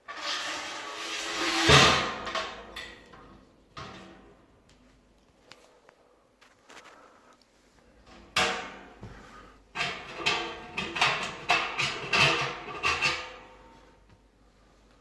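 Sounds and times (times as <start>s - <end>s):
hard objects scraping: 0.0s - 2.2s.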